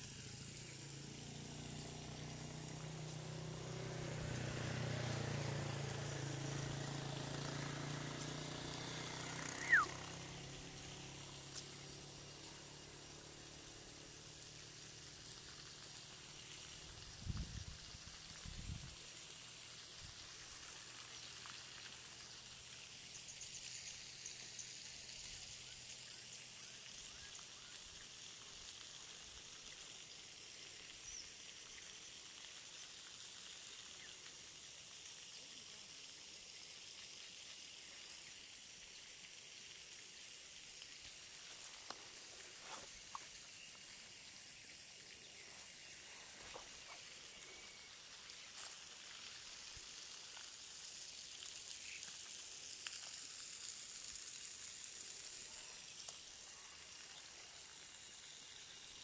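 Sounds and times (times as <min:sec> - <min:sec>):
high-pitched outdoor hiss: 0:00.0 - 0:59.0
faint chirps: 0:09.0 - 0:10.1, 0:42.6 - 0:48.8.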